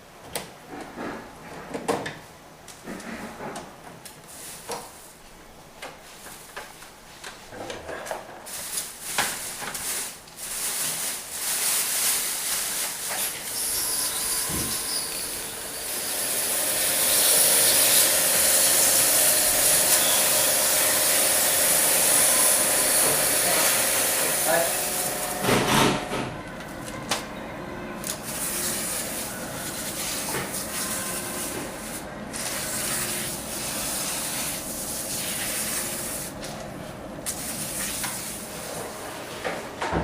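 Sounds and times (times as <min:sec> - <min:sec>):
spray hissing: 0:13.1 - 0:25.4.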